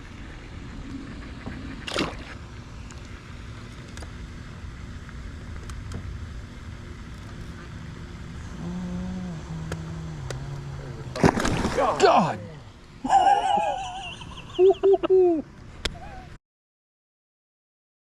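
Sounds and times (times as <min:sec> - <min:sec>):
small boat engine rumble: 0:00.0 - 0:16.4
sharp splash: 0:01.8 - 0:02.3, 0:11.2 - 0:12.2.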